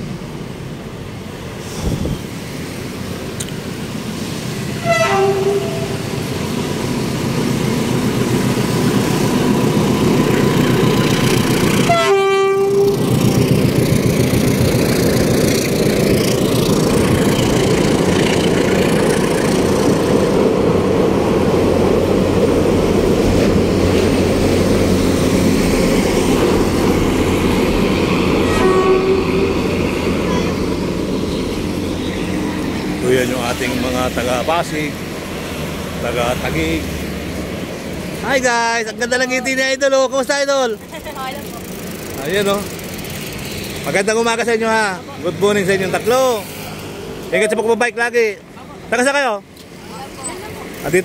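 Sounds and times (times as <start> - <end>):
train running noise: 0.0 - 51.0
train horn: 4.8 - 6.2, 11.8 - 13.1, 28.4 - 29.7.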